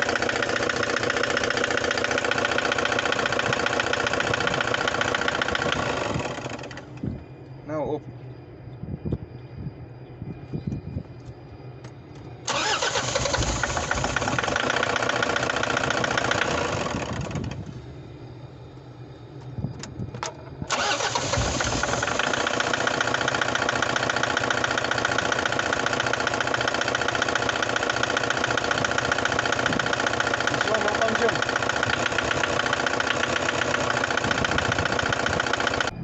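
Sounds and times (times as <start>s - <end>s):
diesel engine starting and idling: 0.0s - 7.1s, 12.4s - 17.8s, 20.3s - 36.0s.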